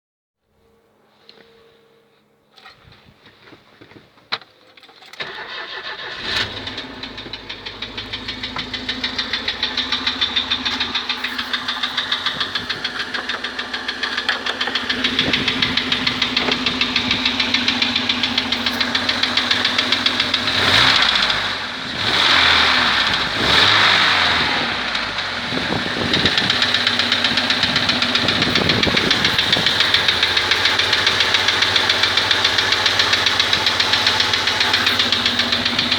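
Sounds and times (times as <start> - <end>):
petrol engine starting and idling: 2.5 - 35.9
engine revving: 5.2 - 35.9
rhythmic engine knock: 6.9 - 35.9.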